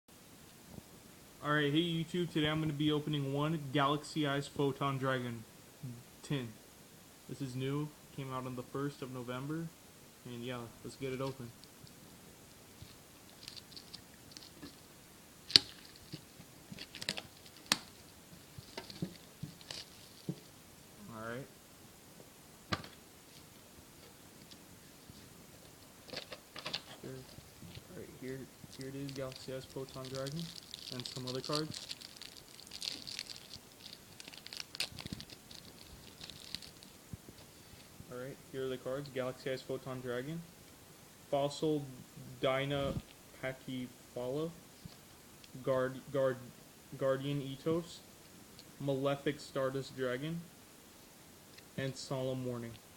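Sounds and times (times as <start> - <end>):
cards and plastic wrapping rustling: 12.8 - 14.8, 15.5 - 20.5, 25.0 - 37.9.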